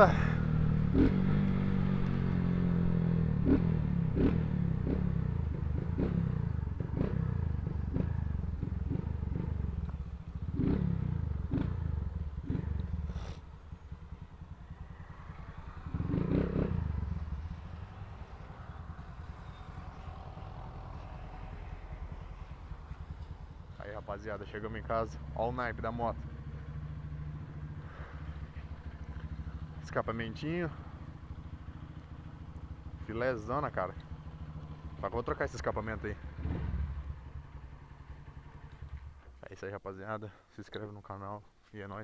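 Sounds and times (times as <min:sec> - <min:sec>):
small motorcycle engine running: 0:00.1 - 0:23.8.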